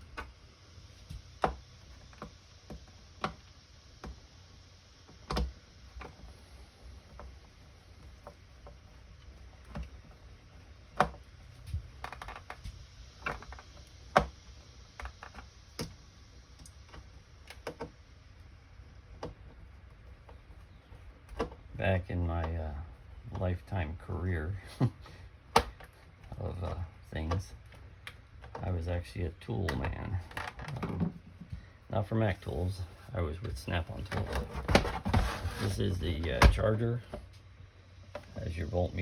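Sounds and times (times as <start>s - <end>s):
hands handling plastic case: 33.4s - 37.2s.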